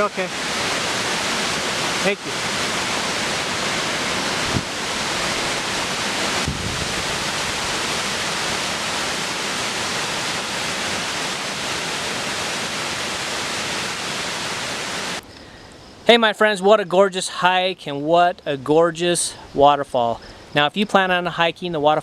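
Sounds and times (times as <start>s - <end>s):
waterfall rushing: 0.0s - 15.3s.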